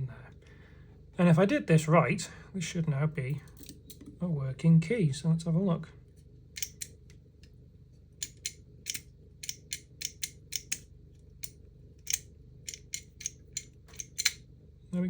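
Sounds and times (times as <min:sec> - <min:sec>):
small lock clicks: 0:08.2 - 0:14.4.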